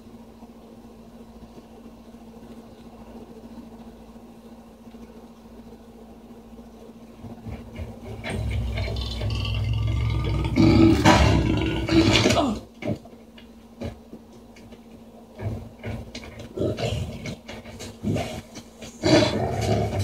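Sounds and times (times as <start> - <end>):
steady low hum: 0.0 - 20.0
deep rumble with crackling: 7.2 - 13.5.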